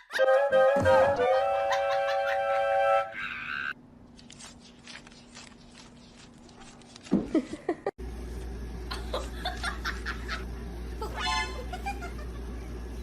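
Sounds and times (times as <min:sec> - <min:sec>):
person laughing: 0:01.4 - 0:03.4, 0:07.1 - 0:07.9, 0:08.9 - 0:12.5.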